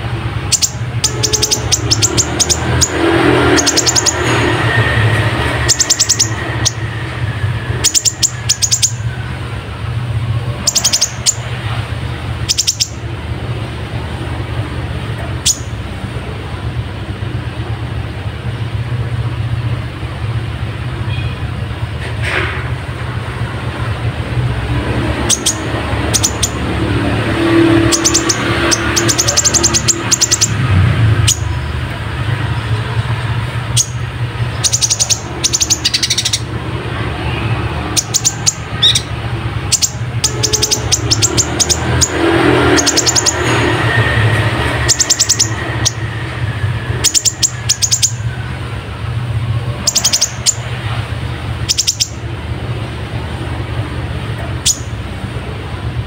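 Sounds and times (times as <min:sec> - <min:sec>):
bird singing clicking trills: 0:00.5 - 0:04.7, 0:05.5 - 0:06.9, 0:07.7 - 0:09.0, 0:10.6 - 0:11.5, 0:12.4 - 0:13.0, 0:15.4 - 0:15.8, 0:25.2 - 0:26.7, 0:27.8 - 0:30.6, 0:33.7 - 0:36.5, 0:37.9 - 0:39.1, 0:39.7 - 0:43.9, 0:44.5 - 0:46.1, 0:47.0 - 0:48.3, 0:49.8 - 0:50.7, 0:51.6 - 0:52.2, 0:54.6 - 0:55.0.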